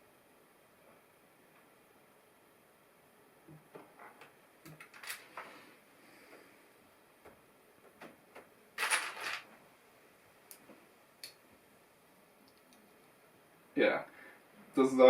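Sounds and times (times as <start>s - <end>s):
plastic pieces rattling: 4.7s - 5.3s, 8.8s - 9.5s.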